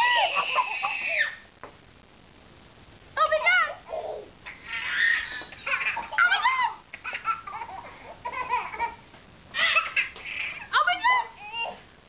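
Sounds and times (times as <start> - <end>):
babies laughing: 4.5 - 9.0, 9.6 - 10.7.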